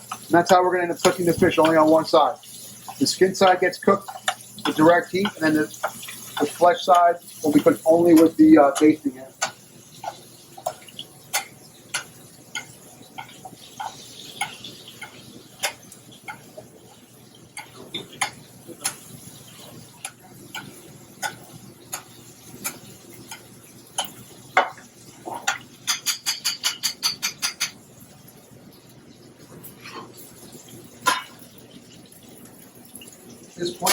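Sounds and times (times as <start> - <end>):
faint sizzle: 0.0 - 33.9
spoon clicking against pan: 8.2 - 16.5, 20.0 - 24.8.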